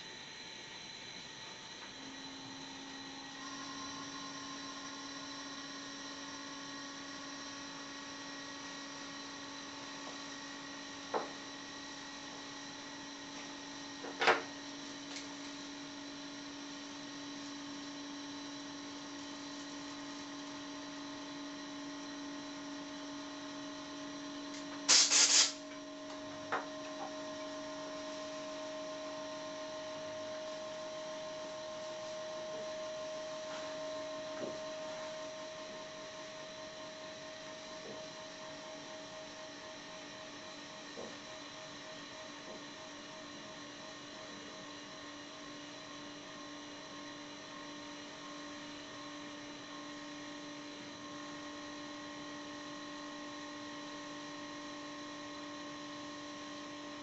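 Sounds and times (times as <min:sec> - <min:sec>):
air compressor humming: 0:09.9 - 0:31.3
loud hiss: 0:24.9 - 0:25.6.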